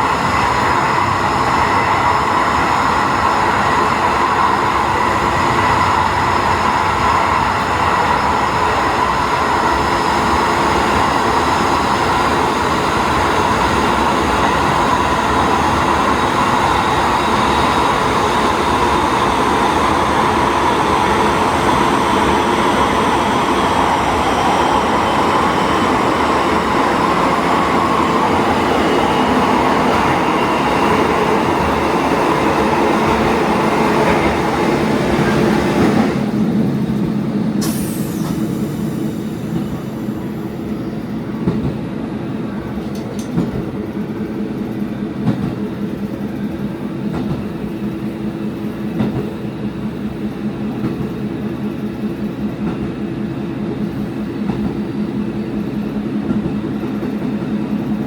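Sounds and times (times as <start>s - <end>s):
diesel railcar engine and track noise: 0.0s - 58.0s.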